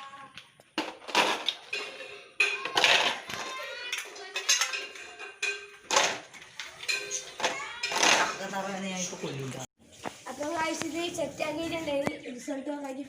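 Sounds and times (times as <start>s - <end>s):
plastic bottles with ice clinking: 0.8s - 8.7s.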